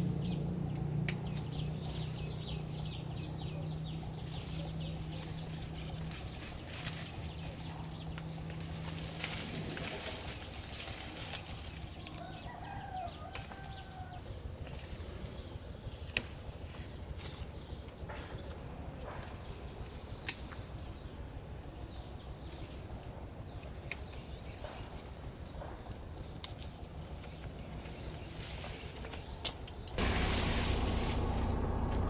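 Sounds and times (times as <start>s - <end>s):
thin high-pitched whine: 30.0s - 32.0s.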